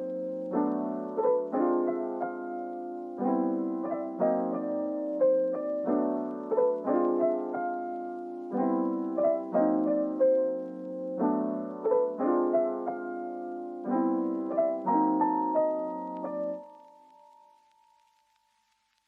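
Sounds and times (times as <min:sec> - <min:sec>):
soft piano melody: 0:00.0 - 0:19.0.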